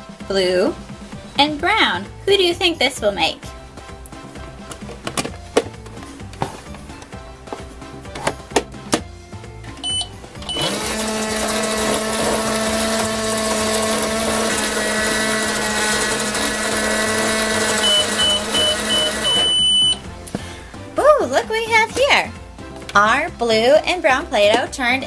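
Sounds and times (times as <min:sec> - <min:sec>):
short high beeps: 0:09.8 - 0:10.7, 0:17.8 - 0:20.0
electric whirring hum: 0:09.8 - 0:20.1.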